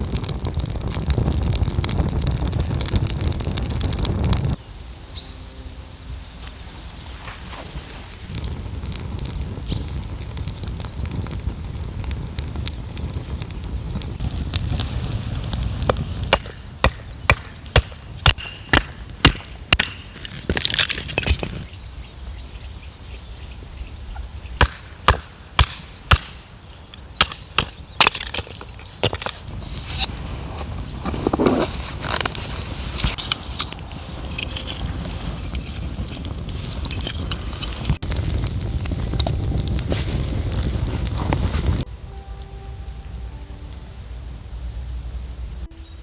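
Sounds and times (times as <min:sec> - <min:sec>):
birds chirping faintly: 0:04.6 - 0:08.3, 0:21.3 - 0:29.4, 0:42.0 - 0:46.0
sharp strikes on wood: 0:16.3 - 0:20.0, 0:24.6 - 0:26.4
low rumbling noise: 0:29.2 - 0:46.0.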